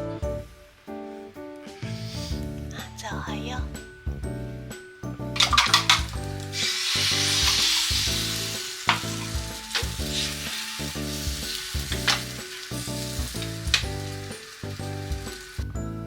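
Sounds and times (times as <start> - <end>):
soft piano music: 0.0 - 16.0
food sizzling in a frying pan: 5.4 - 15.8.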